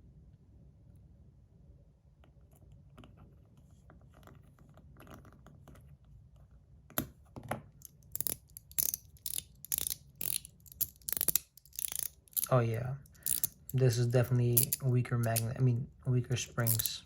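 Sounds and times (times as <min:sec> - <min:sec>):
screw being driven scratching: 0:07.9 - 0:15.5, 0:16.6 - 0:17.0.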